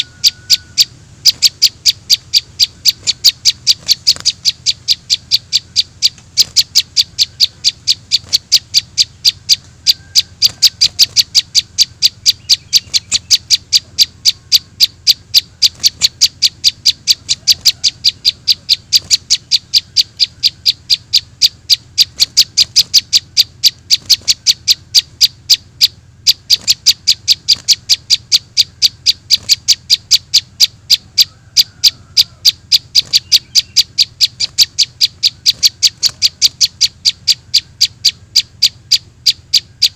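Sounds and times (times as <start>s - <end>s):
young bird begging chirps: 0.0s - 39.9s.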